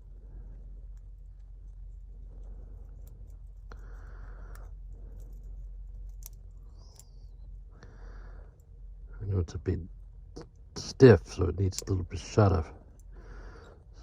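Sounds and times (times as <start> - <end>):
soft rubbing: 0.0 - 7.7
low steady hum: 0.0 - 14.0.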